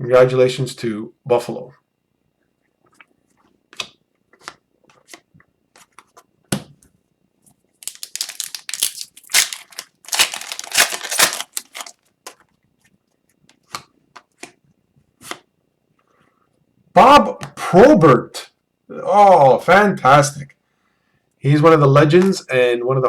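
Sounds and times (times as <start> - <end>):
card pack wrapper tearing: 7.8 - 12.0.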